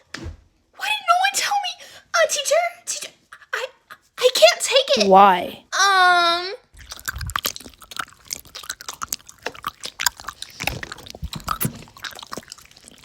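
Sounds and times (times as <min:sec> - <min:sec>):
person chewing crunchy food: 0:06.7 - 0:13.0.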